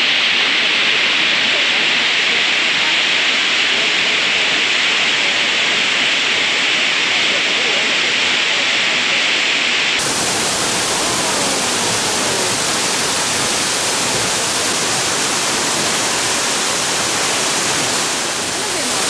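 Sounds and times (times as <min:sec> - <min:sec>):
waterfall rushing: 0:10.0 - 0:19.0.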